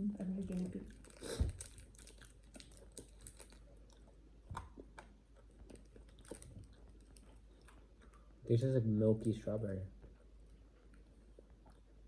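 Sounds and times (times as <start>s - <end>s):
chewing hard candies: 0.5s - 8.6s.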